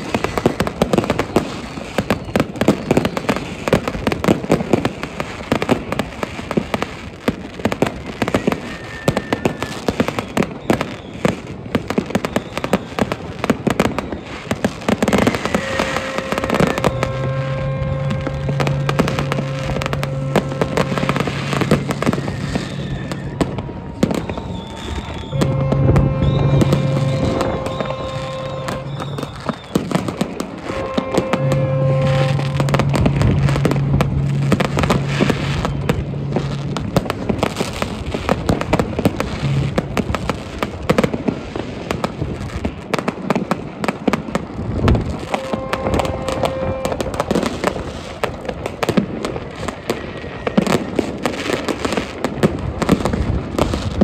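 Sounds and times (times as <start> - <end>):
fireworks bangs and crackling: 0.0 - 54.0
long steady low tones: 15.2 - 41.3.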